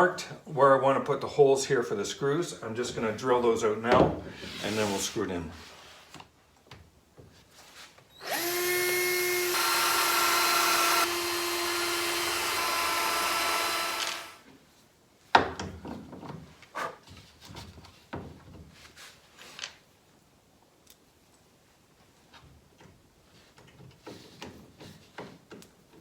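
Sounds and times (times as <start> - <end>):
power drill drilling: 8.2 - 14.4.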